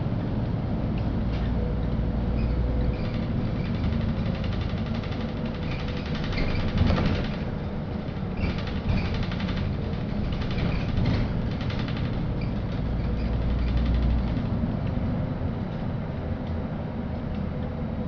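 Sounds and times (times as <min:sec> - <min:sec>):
bus body rattling: 0:00.0 - 0:18.0
bus engine and road rumble: 0:00.0 - 0:18.0.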